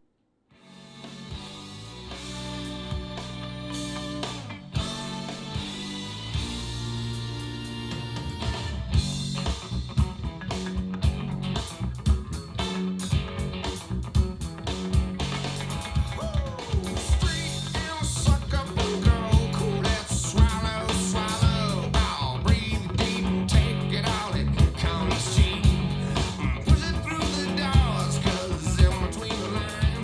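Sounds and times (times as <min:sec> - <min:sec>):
guitar: 0:00.0 - 0:30.0
heavy bass beat: 0:01.3 - 0:30.0
person singing: 0:16.0 - 0:30.0.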